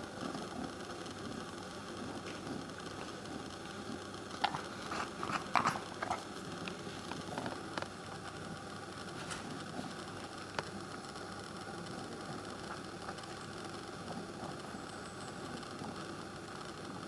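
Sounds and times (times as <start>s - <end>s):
steady background noise: 0.0s - 17.0s
dog chewing sand: 4.4s - 8.2s.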